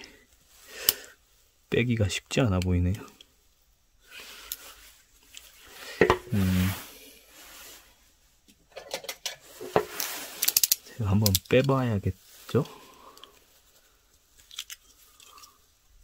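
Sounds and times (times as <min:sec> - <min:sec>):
multitool clinking and clicking: 0:10.4 - 0:11.7, 0:14.4 - 0:15.5.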